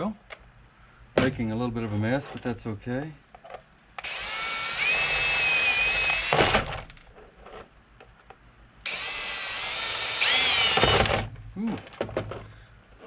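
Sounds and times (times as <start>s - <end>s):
power drill whining: 4.0s - 6.8s, 8.8s - 11.3s.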